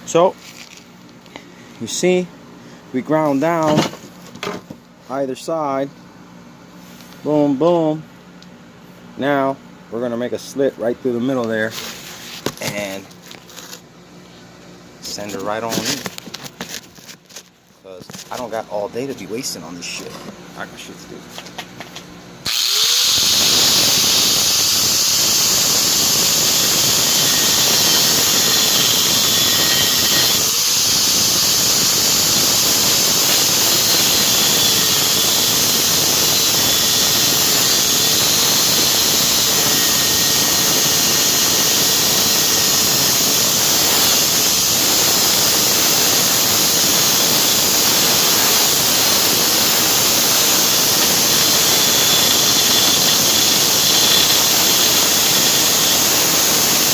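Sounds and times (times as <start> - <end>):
grinder cutting metal bolt: 22.5 - 56.9.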